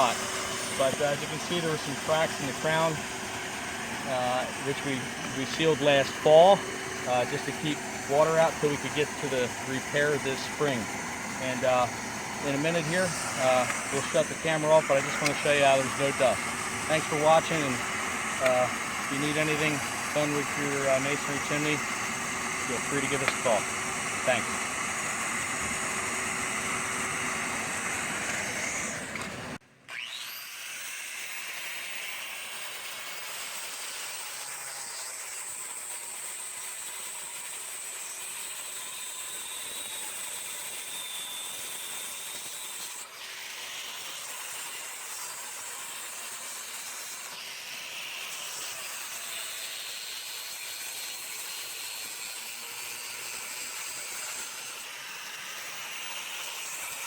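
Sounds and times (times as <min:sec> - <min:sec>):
vacuum running: 0:00.0 - 0:30.4.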